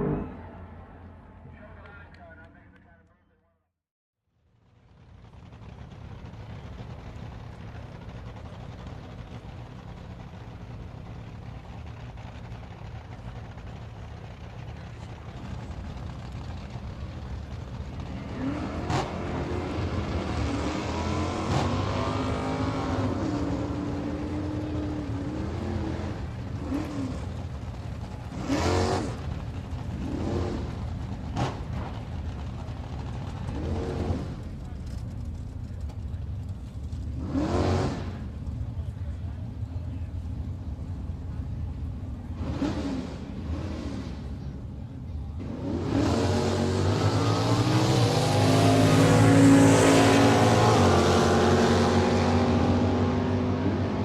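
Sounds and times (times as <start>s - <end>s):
sports car engine revving: 17.2s - 36.2s, 36.9s - 38.5s, 45.4s - 54.0s.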